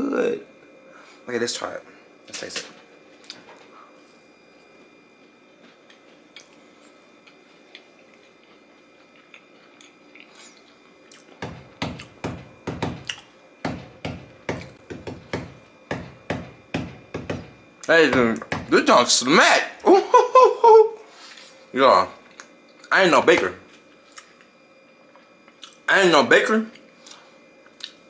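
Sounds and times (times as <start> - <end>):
person chewing crunchy cookie: 4.8 - 11.4, 12.0 - 12.2, 13.0 - 13.3, 25.1 - 25.9, 26.8 - 28.0.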